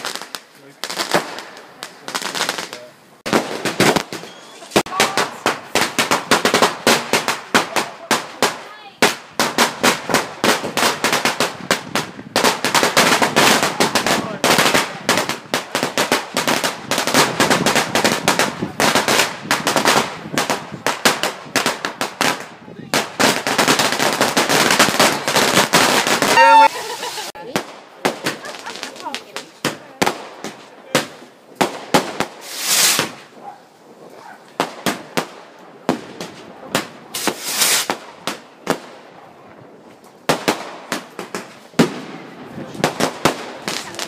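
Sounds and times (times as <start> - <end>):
fireworks bangs and crackles: 0.0 - 44.0.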